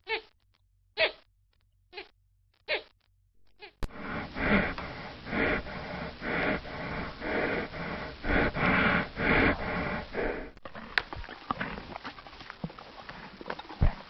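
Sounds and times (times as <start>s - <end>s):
horse breathy snorts: 3.8s - 10.9s.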